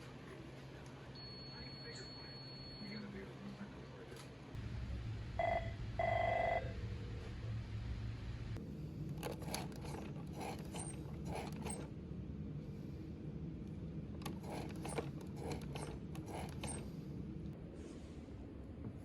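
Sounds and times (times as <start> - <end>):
rapid mechanical clicking and rattling: 9.0 - 11.9, 14.1 - 17.0.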